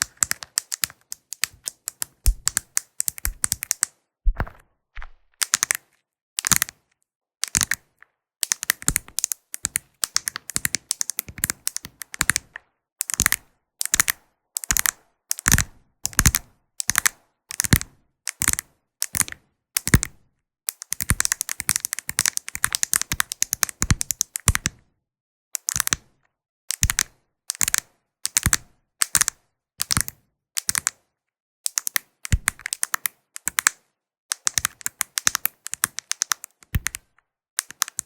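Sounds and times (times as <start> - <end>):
clicking taps on mirror tiles: 0.1 - 5.8.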